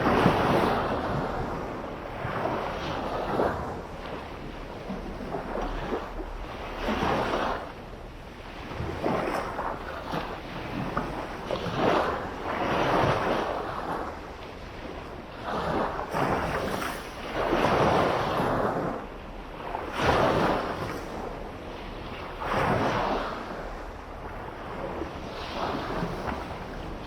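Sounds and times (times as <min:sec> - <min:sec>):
small waves breaking on beach: 0:00.0 - 0:07.8, 0:08.4 - 0:19.0, 0:19.6 - 0:27.0.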